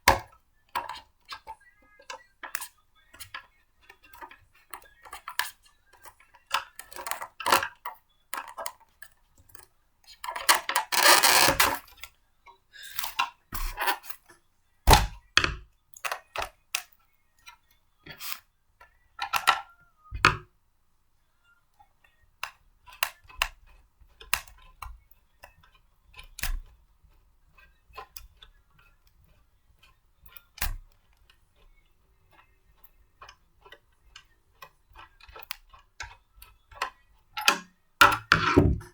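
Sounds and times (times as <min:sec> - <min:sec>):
blender parts clicking and knocking: 0:10.3 - 0:11.9.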